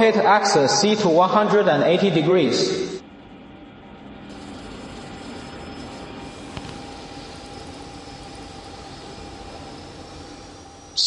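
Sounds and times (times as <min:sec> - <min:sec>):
machine servo hum and whine: 0:03.0 - 0:11.0.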